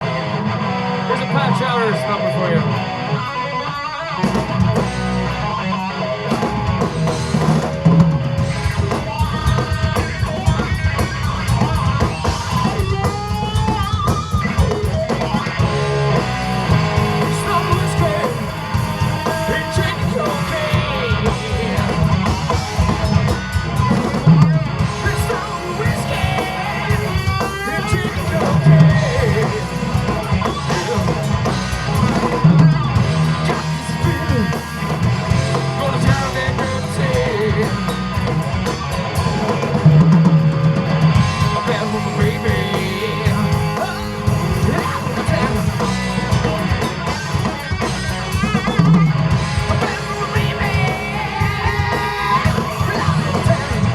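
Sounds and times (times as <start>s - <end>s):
bass guitar: 0.0s - 53.9s
electric guitar: 0.0s - 53.9s
drum kit: 2.7s - 53.9s
person singing: 17.0s - 22.5s, 24.7s - 31.3s, 33.5s - 38.0s, 41.3s - 46.6s, 49.7s - 53.9s.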